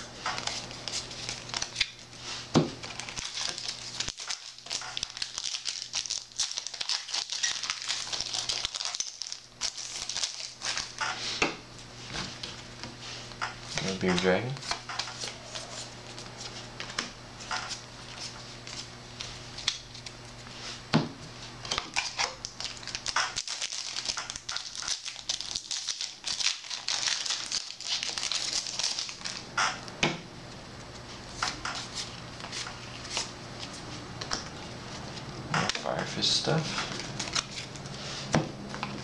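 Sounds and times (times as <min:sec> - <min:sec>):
foil wrappers crinkling: 0:00.3 - 0:11.1, 0:21.9 - 0:29.5, 0:31.4 - 0:38.1.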